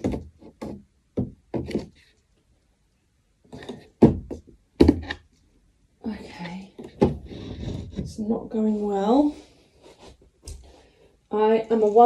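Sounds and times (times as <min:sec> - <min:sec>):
wooden panels knocking: 0:00.0 - 0:02.0, 0:03.6 - 0:05.2, 0:06.8 - 0:08.2.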